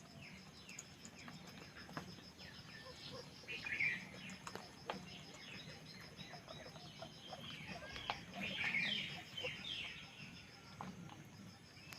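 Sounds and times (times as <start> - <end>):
guinea pigs squeaking: 2.8 - 10.0.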